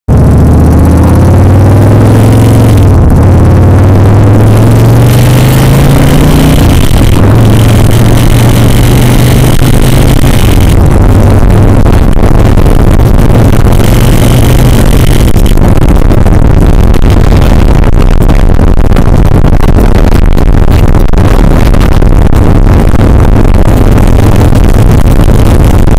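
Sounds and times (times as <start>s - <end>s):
engine vibrating sound: 0.0s - 25.9s.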